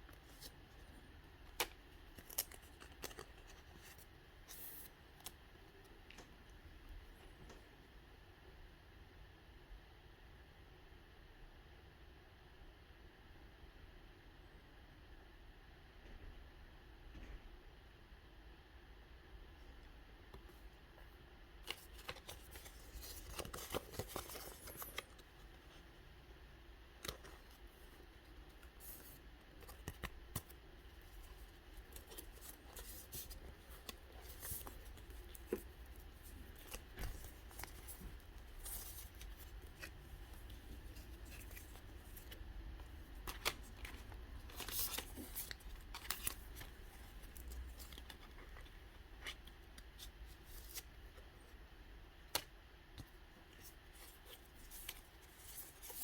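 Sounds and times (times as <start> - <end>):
card packaging crackles: 21.7 - 25.3.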